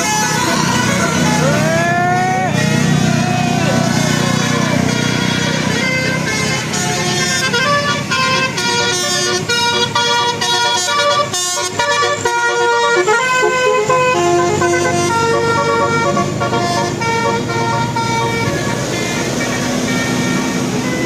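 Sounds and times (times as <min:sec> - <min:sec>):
bus engine rumble: 0:00.0 - 0:21.0
musical bus horn playing a melody: 0:00.0 - 0:21.0.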